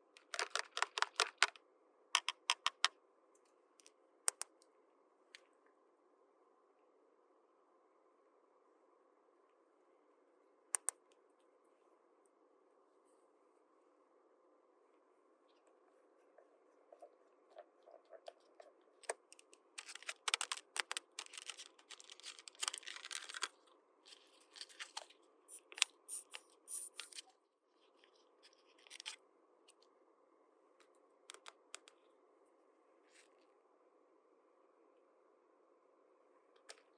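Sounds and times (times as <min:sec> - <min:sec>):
plastic toy pieces clicking: 0:00.2 - 0:01.6, 0:02.2 - 0:02.9, 0:19.8 - 0:23.5
packaging crinkling: 0:19.3 - 0:27.2.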